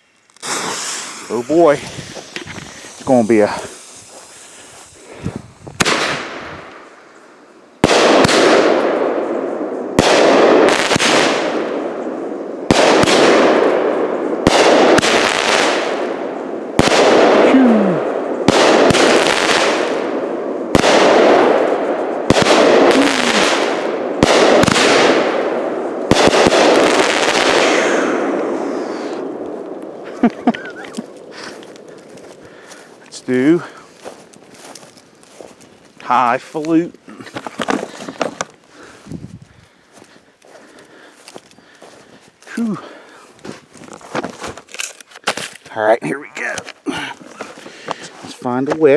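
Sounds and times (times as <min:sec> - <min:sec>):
firework crackle: 0:00.0 - 0:07.2, 0:07.8 - 0:44.8
small firework pops: 0:00.2 - 0:04.9, 0:05.8 - 0:06.9
firework bangs: 0:00.4 - 0:07.0, 0:07.8 - 0:32.4.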